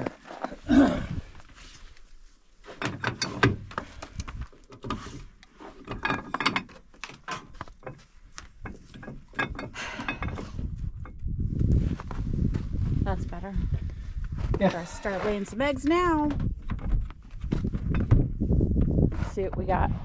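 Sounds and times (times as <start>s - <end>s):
knocks clicks and rattles: 5.8s - 11.2s.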